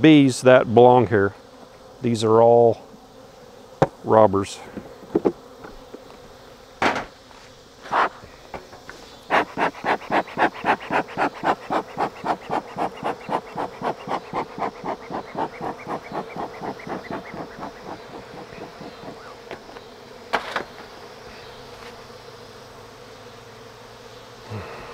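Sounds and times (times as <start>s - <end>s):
honey bees buzzing: 0.0s - 24.9s
short whooshing strokes: 9.3s - 19.8s.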